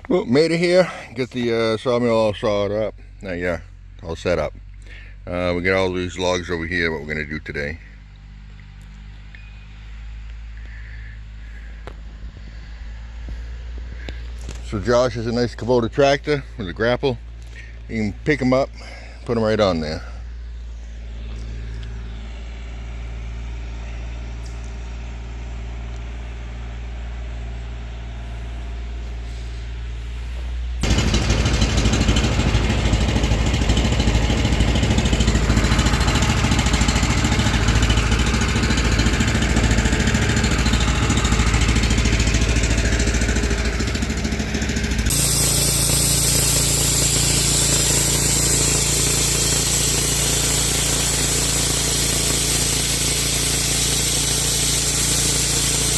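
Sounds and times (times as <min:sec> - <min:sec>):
engine idling: 0:00.0 - 0:55.9.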